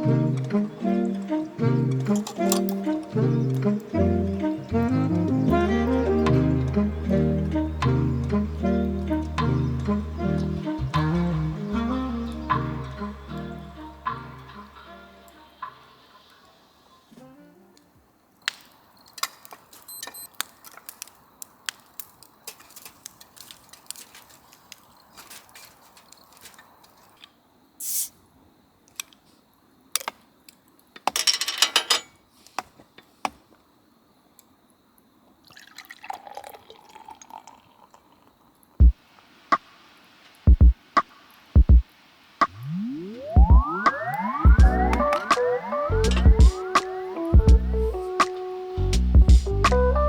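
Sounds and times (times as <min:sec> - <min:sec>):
dripping liquid: 0:35.4 - 0:38.4
heavy low thumps: 0:43.4 - 0:43.7, 0:44.5 - 0:45.1, 0:46.0 - 0:46.6, 0:47.4 - 0:48.0, 0:48.8 - 0:49.8.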